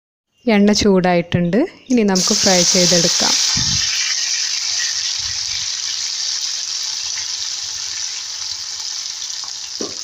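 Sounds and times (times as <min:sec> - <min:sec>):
food deep-frying in oil: 0:02.1 - 0:10.0.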